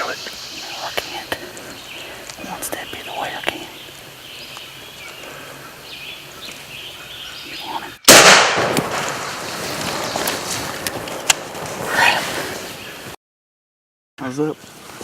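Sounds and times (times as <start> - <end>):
shotgun blast with echo: 8.1 - 9.3.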